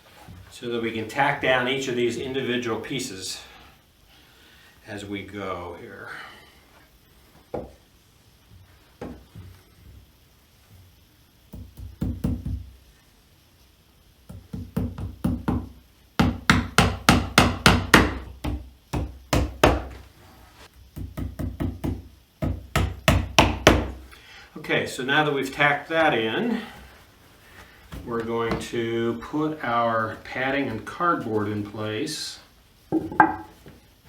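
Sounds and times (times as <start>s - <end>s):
hammer striking tacks into wood: 14.3s - 19.9s, 21.0s - 24.0s.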